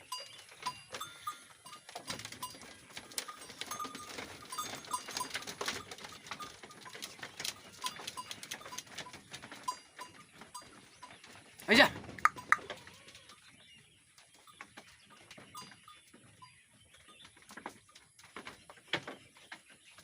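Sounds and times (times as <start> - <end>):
goat bells clinking: 0.0 - 18.9
knocks and rustling: 1.7 - 12.9.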